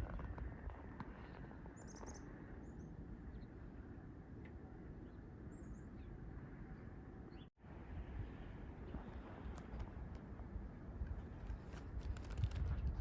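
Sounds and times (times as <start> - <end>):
low outdoor hum: 0.0 - 13.0
small birds chirping: 1.7 - 3.7, 4.6 - 7.5.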